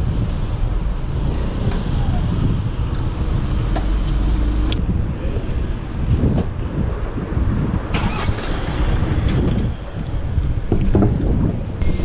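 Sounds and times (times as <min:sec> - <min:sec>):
passing road traffic: 0:00.0 - 0:12.0
wind rumbling on microphone: 0:00.0 - 0:12.0.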